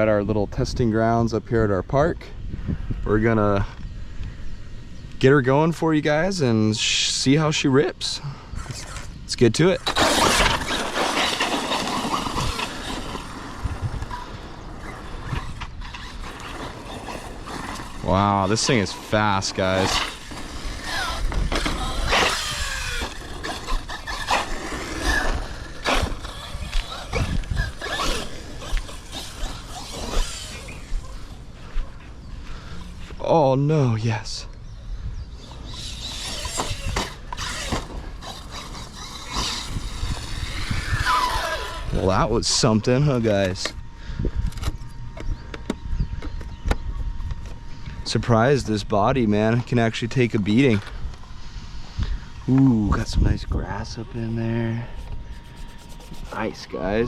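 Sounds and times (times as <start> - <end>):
rc car running: 8.6 - 31.6, 35.2 - 43.8, 53.0 - 57.0.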